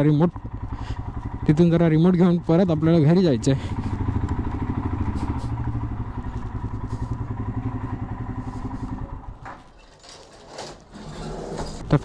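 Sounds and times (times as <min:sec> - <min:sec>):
motorcycle engine idling: 0:00.0 - 0:09.4.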